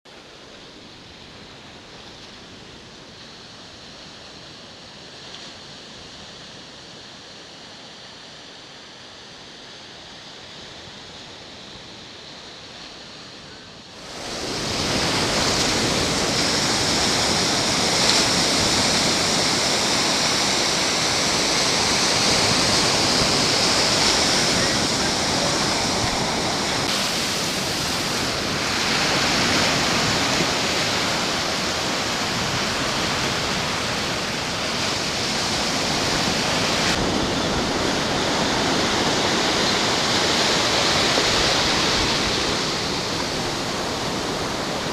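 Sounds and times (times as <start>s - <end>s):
ocean surf breaking: 13.9s - 44.9s.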